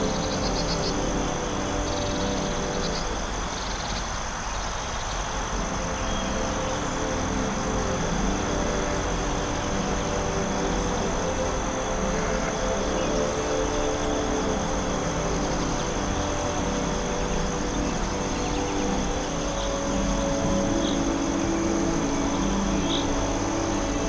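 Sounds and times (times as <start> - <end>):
insects chirping: 0.0 - 24.0
pulsing insect trill: 0.0 - 24.0
low drone notes: 5.4 - 24.0.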